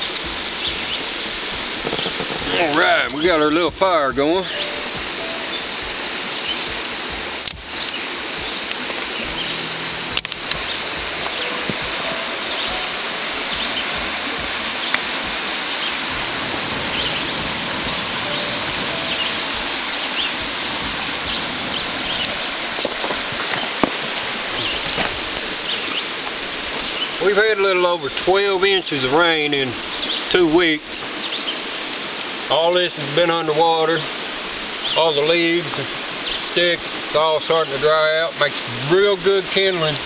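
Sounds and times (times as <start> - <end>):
sharp clicks: 0.0 - 2.8
campfire crackling and popping: 0.0 - 28.3
creek rushing: 0.0 - 40.0.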